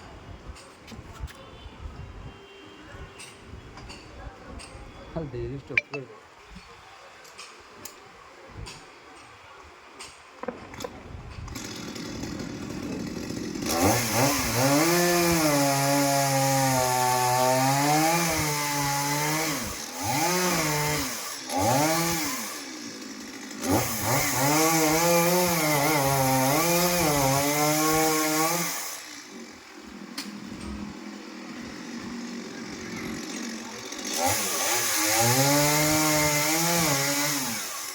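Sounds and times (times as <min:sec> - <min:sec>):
chainsaw revving and cutting: 0:11.5 - 0:37.9.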